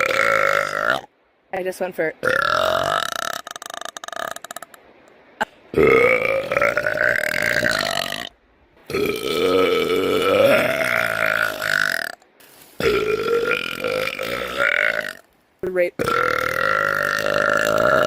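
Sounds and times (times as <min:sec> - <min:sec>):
woman belching: 0:00.0 - 0:01.1, 0:05.7 - 0:08.3, 0:08.9 - 0:12.2, 0:12.8 - 0:15.2, 0:15.9 - 0:18.0.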